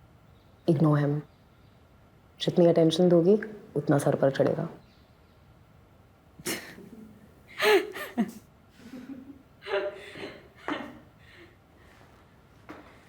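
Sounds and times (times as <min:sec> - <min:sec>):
soft chuckles: 0:06.4 - 0:11.5
person gasping: 0:07.5 - 0:08.3.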